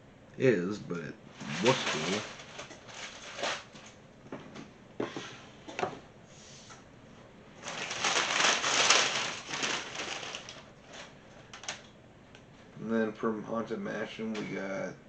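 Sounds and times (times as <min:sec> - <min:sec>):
packing paper and cardboard crinkling: 0:01.4 - 0:04.0, 0:07.6 - 0:11.9.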